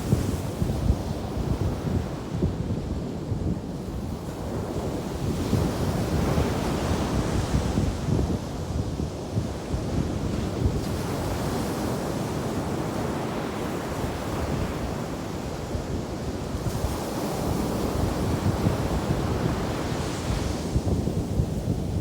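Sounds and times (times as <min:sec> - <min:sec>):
wind buffeting microphone: 0:00.0 - 0:22.0
ocean surf on a beach: 0:09.1 - 0:22.0.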